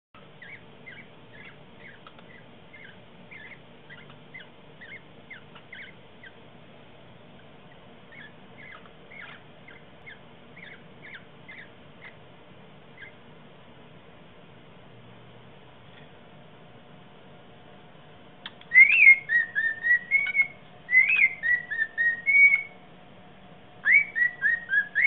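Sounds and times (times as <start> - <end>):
small bird chirping: 0.2 - 6.5, 7.3 - 12.3, 12.9 - 13.3, 18.4 - 22.8, 23.8 - 25.0.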